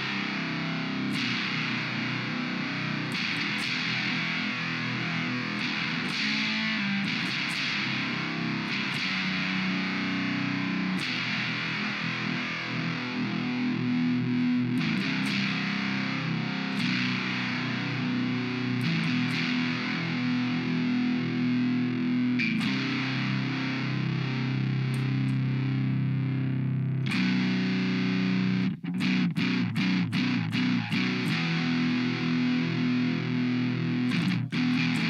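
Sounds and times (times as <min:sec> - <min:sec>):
fuzzed electric guitar: 0:00.0 - 0:35.0.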